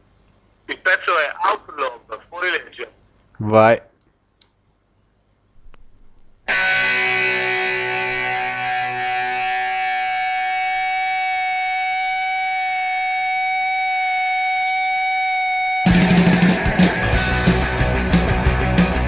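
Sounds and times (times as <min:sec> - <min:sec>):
distorted electric guitar chord: 0:06.5 - 0:14.8, 0:15.8 - 0:19.0.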